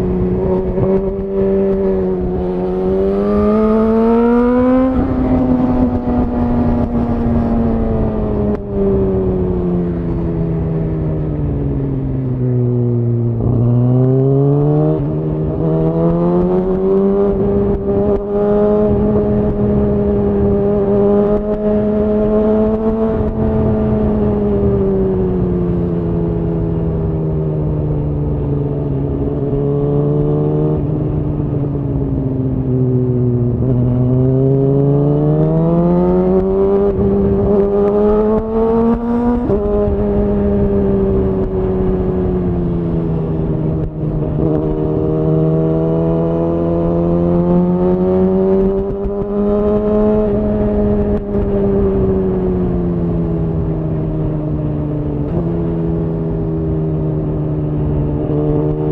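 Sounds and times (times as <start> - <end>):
motorcycle engine revving: 0.0 - 11.6, 12.3 - 58.9.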